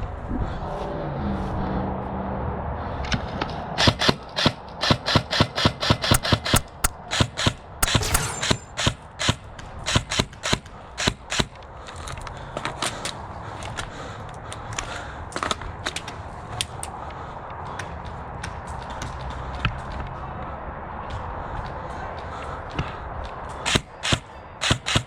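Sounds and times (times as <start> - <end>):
airsoft gun shots: 6.0 - 9.4, 23.7 - 25.0.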